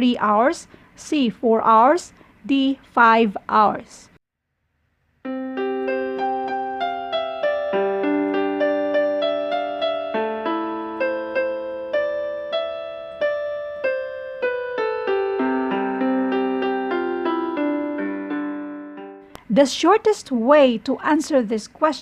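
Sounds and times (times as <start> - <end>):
gentle piano melody: 5.3 - 19.3.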